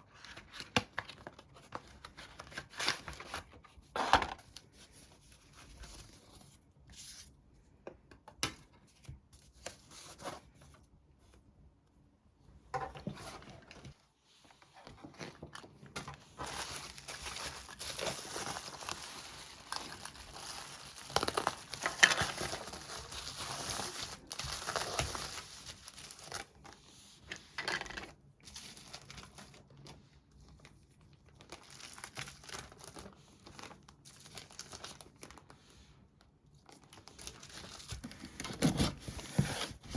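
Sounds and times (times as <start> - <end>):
packaging tearing and crinkling: 16.4 - 26.6.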